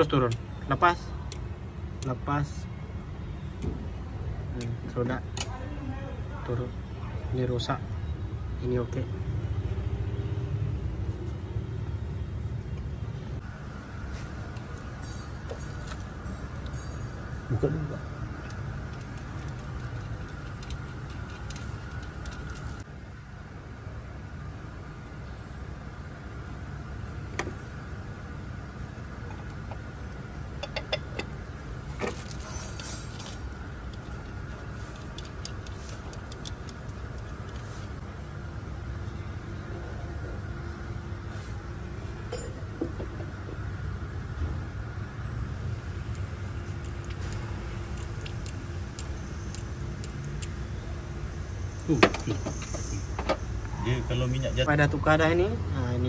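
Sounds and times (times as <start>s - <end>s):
low mechanical rumble: 0.0s - 56.0s
metal parts and tools clinking: 14.5s - 22.8s, 30.6s - 37.9s, 42.3s - 42.7s, 51.7s - 53.6s.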